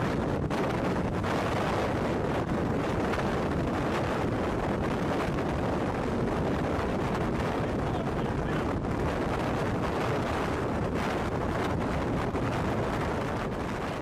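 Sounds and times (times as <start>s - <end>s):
strong wind on microphone: 0.0s - 14.0s.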